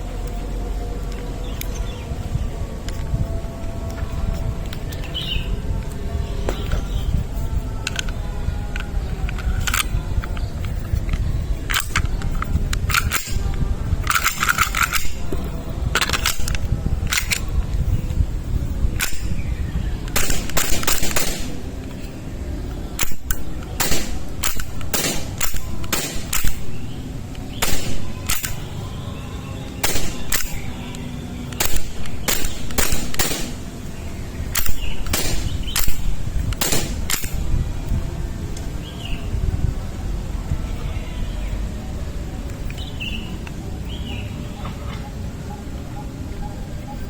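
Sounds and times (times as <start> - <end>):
airsoft pistol shots: 20.1 - 21.8, 23.0 - 28.7, 29.8 - 30.8, 31.6 - 33.9, 34.6 - 37.4.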